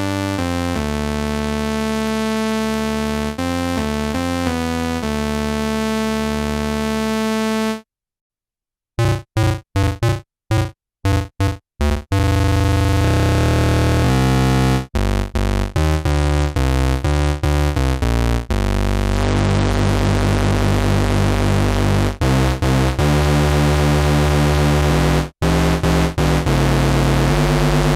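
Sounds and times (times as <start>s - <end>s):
staccato synthesizer notes: 9.0s - 13.6s, 17.4s - 27.9s
bass-heavy synthesizer line: 9.0s - 27.9s
synthesizer held chord: 12.2s - 27.9s.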